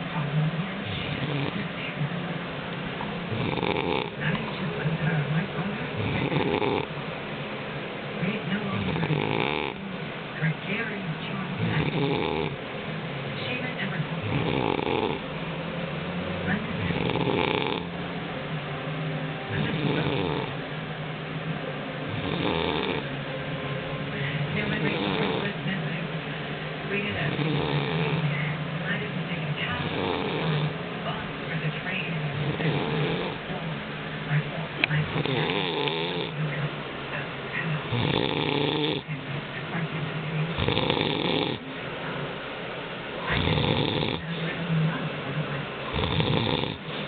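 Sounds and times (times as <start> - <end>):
man snoring: 1.2 - 1.6, 3.3 - 4.2, 6.0 - 6.9, 8.8 - 9.8, 11.6 - 12.6, 14.2 - 15.2, 16.9 - 17.9, 19.6 - 20.6, 22.1 - 23.1, 24.8 - 25.5, 27.3 - 28.2, 29.8 - 30.7, 32.4 - 33.4, 35.1 - 36.3, 37.8 - 39.0, 40.6 - 41.6, 43.3 - 44.3, 45.9 - 47.0.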